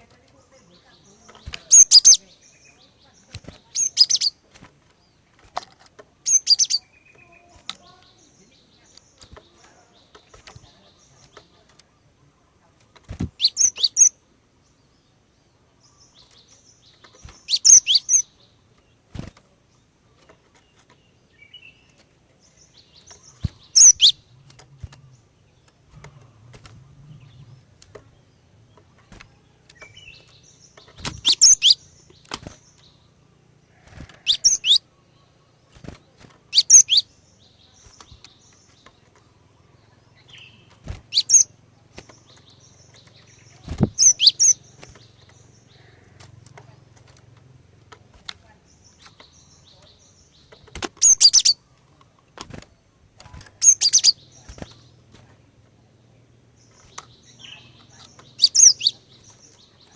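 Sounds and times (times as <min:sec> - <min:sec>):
bird calling high sharp chirps: 0:01.1 - 0:02.7, 0:03.7 - 0:04.4, 0:06.2 - 0:08.4, 0:13.4 - 0:14.2, 0:17.2 - 0:18.4, 0:22.9 - 0:25.4, 0:29.8 - 0:32.9, 0:33.8 - 0:34.9, 0:36.5 - 0:37.1, 0:40.3 - 0:46.1, 0:51.0 - 0:51.6, 0:53.6 - 0:54.9, 0:56.7 - 0:59.5.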